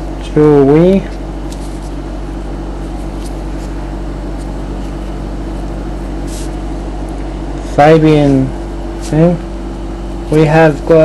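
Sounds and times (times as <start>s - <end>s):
steady low hum with hiss: 0.0s - 11.0s
trading cards being handled: 1.0s - 2.0s, 2.8s - 5.1s, 6.2s - 6.6s.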